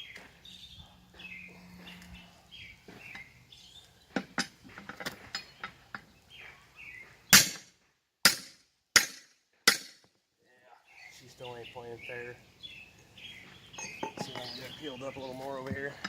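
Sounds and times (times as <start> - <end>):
birds chirping: 0.0 - 7.6, 10.4 - 16.0
sharp metal strikes: 7.3 - 10.0.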